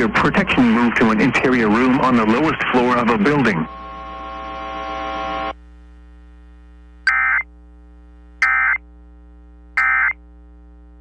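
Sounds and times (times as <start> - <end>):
steady electrical hum: 0.0 - 11.0
digital data tone bursts: 7.1 - 7.5, 8.4 - 8.8, 9.8 - 10.2.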